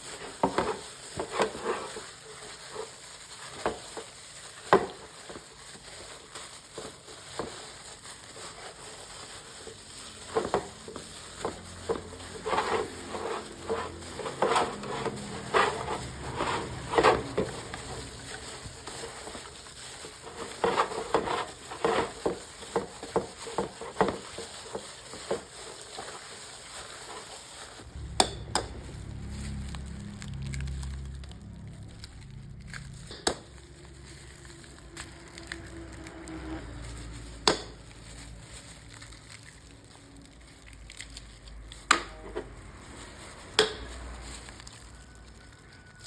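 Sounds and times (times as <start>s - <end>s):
low rumble: 27.8s - 36.6s.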